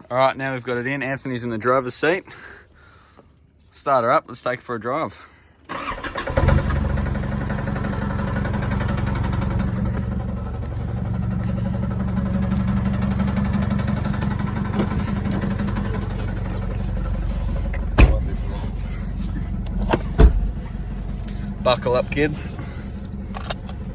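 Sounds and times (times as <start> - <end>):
car engine starting and idling: 5.7 - 23.9.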